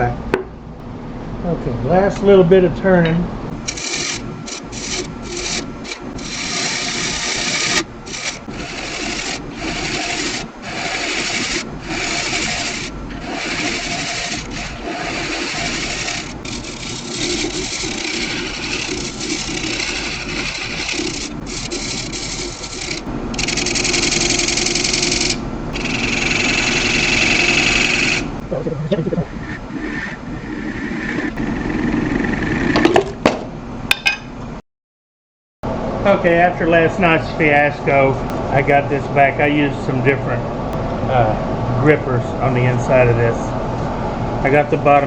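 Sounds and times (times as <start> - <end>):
faint lathe hum: 0.0 - 32.9
turning tool scraping wood: 3.5 - 28.6, 29.2 - 32.9.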